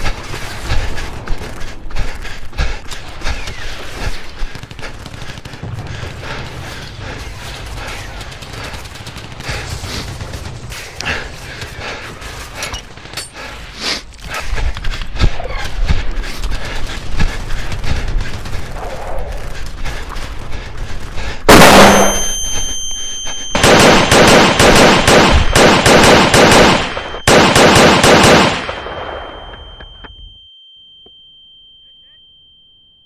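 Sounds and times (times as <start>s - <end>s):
rapid automatic gunfire: 3.3s - 11.6s, 21.5s - 22.6s, 23.5s - 28.9s
high ringing tone: 21.5s - 23.7s, 26.8s - 27.3s, 28.6s - 33.0s.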